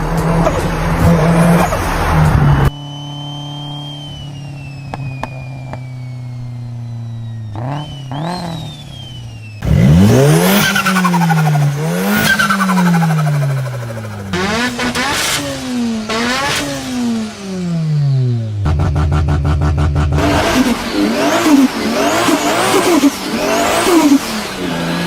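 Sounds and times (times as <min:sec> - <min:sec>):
turbocharged car engine revving: 0:00.0 - 0:25.0
turbo whistle: 0:02.4 - 0:13.4
engine idling: 0:03.0 - 0:25.0.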